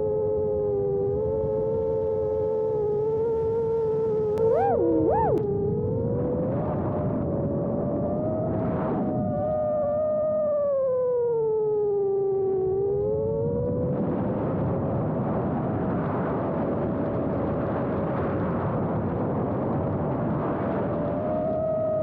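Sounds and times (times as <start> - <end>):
quadcopter propellers whining: 4.4 - 5.8.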